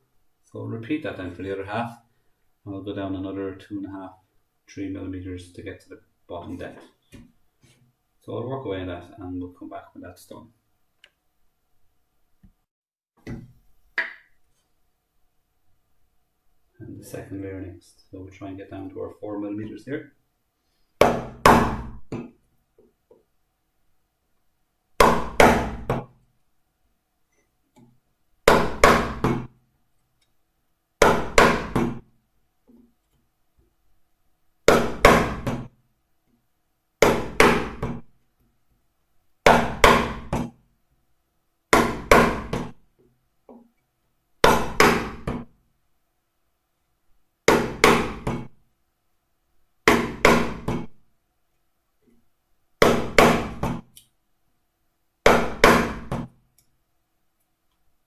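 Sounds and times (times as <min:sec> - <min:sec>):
mallet striking wood chisel: 0:21.0 - 0:22.3, 0:25.0 - 0:26.0, 0:31.0 - 0:31.9, 0:34.7 - 0:35.7, 0:41.7 - 0:42.7, 0:47.5 - 0:48.5, 0:49.9 - 0:50.8, 0:52.8 - 0:53.8, 0:55.2 - 0:56.3.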